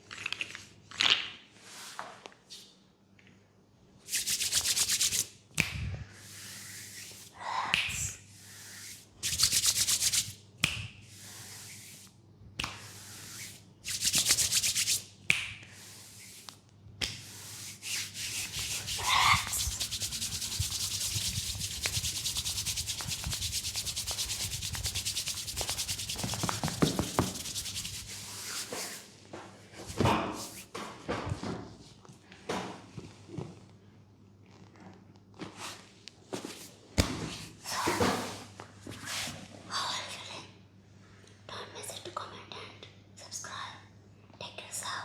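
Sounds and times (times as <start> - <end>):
hands rubbing skin: 4.1 - 29.1, 29.9 - 30.7.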